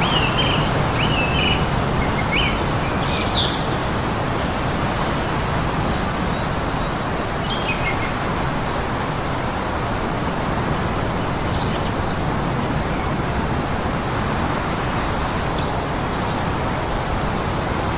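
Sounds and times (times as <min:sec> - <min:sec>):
small birds chirping: 0:00.0 - 0:05.7.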